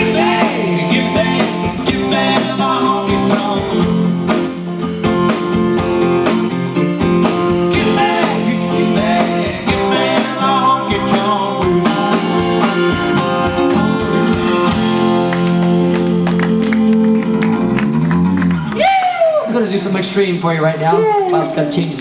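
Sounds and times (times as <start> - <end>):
steady drum beat: 0.0 - 16.4
electric guitar lead with bends: 0.0 - 19.5
bass notes: 0.0 - 22.0.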